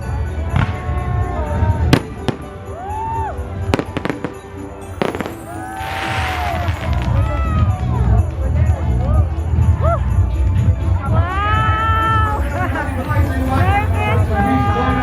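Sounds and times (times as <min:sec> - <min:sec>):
fireworks crackling: 0:01.6 - 0:08.2
fireworks bangs: 0:03.6 - 0:07.3
music with bass beat: 0:06.2 - 0:15.0.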